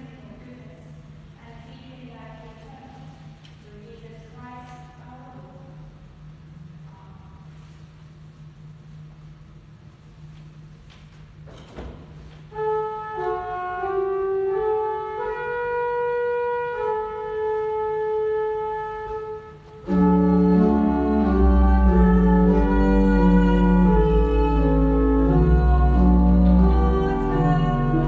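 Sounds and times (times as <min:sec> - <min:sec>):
faint low hum: 0:00.0 - 0:28.0
deep bass organ notes: 0:12.0 - 0:28.0
church organ chords: 0:12.5 - 0:28.0.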